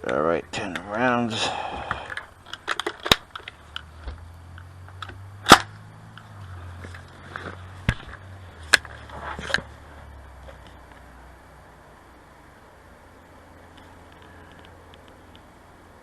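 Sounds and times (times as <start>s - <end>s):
rifle shot: 5.4s - 5.7s.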